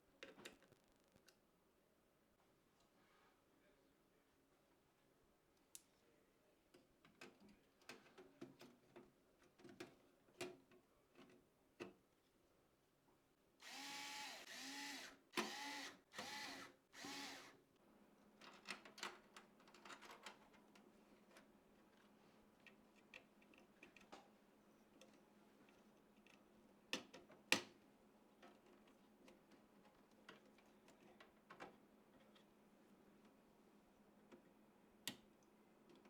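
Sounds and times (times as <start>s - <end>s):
electric screwdriver whirring: 13.6s - 17.6s.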